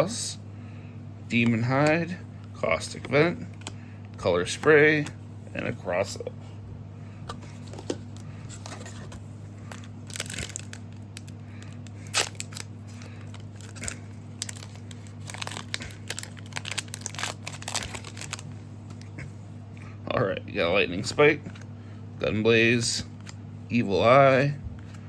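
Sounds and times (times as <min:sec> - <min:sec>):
steady low hum: 0:00.0 - 0:25.0
foil wrapper tearing and crinkling: 0:09.7 - 0:18.5.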